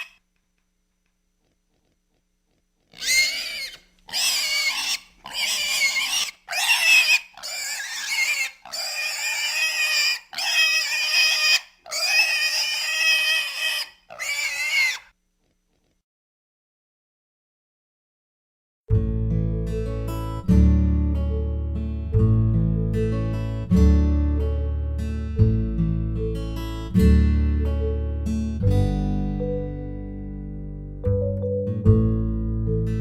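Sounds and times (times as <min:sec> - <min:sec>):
pig screaming: 0:02.9 - 0:15.1.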